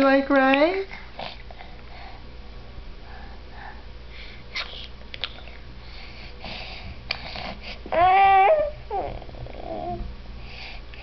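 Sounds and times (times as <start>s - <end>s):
baby sniffing and breathing: 5.8s - 7.9s, 10.4s - 11.0s.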